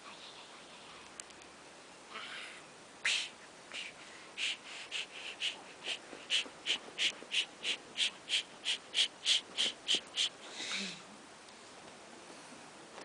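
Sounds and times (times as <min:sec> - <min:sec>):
dog panting: 0:04.4 - 0:10.3.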